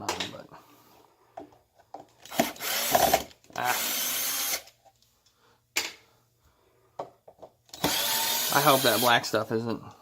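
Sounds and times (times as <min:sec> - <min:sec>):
cordless drill driver running: 0:02.3 - 0:04.7, 0:07.8 - 0:09.2.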